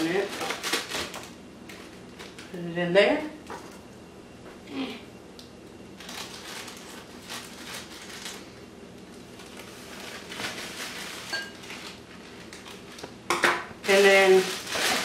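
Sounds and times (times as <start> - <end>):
dry cake mix rustling into bowl: 6.0 - 13.1, 13.8 - 15.0.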